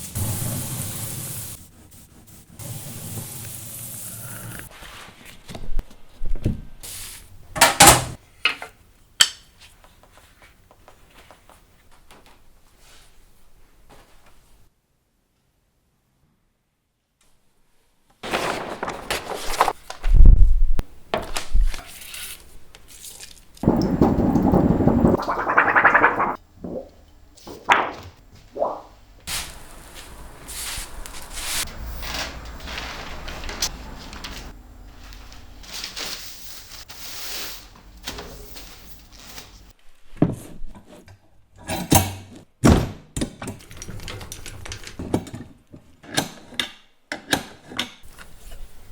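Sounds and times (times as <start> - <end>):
quick scratchy strokes: 24.8 - 26.4.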